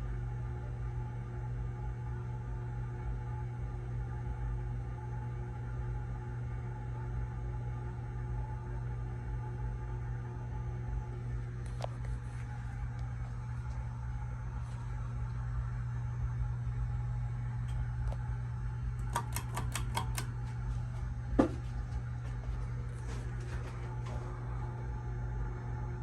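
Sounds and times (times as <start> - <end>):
ceiling fan humming: 10.2 - 26.0
quick clicks: 19.0 - 20.3
knock: 21.4 - 21.6.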